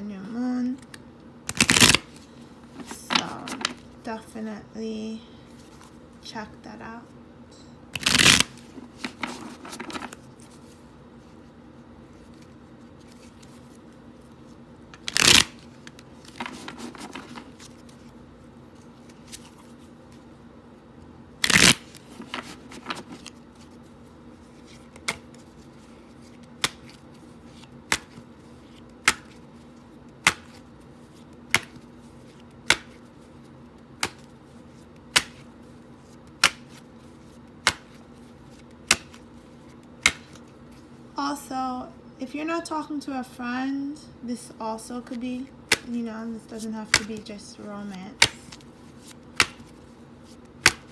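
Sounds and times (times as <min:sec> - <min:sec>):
cards riffle shuffling: 0:01.5 - 0:04.0, 0:08.0 - 0:11.4, 0:12.0 - 0:20.4, 0:21.4 - 0:41.1, 0:45.1 - 0:50.9
cards rustling: 0:01.5 - 0:04.4, 0:08.0 - 0:20.4, 0:21.4 - 0:41.2, 0:44.9 - 0:50.9.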